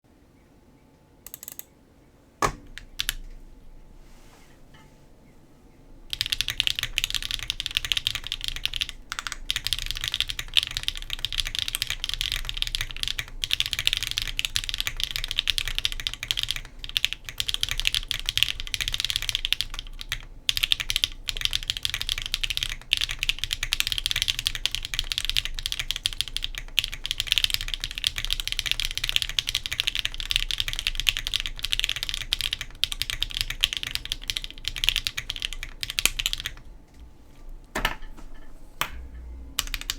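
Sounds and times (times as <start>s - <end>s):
fast mechanical keyboard typing: 1.3s - 1.7s, 2.8s - 3.2s, 6.1s - 36.7s, 39.6s - 39.9s.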